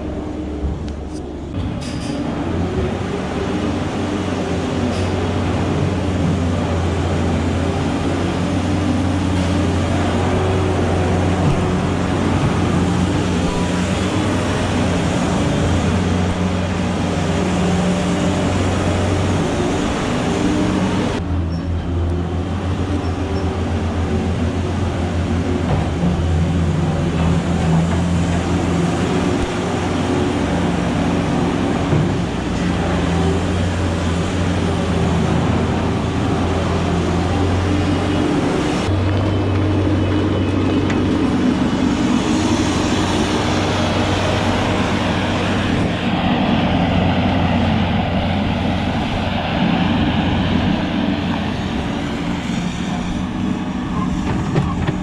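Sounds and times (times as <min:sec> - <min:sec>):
engine running: 0:00.0 - 0:55.0.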